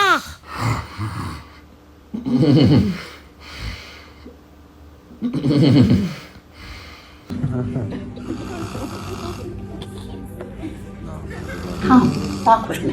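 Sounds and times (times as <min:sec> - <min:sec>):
loud snores: 0:00.0 - 0:01.6, 0:08.3 - 0:09.6, 0:11.4 - 0:12.7
quiet breathing: 0:02.8 - 0:04.5, 0:06.0 - 0:07.3.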